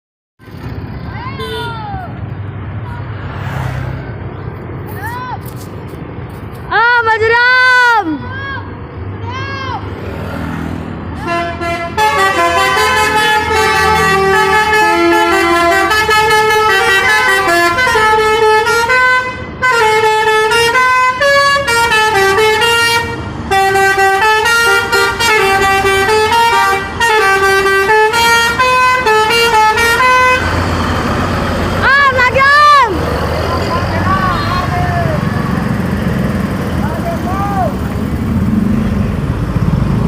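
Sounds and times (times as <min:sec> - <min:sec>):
musical air horns playing tunes: 0:11.2 - 0:30.7.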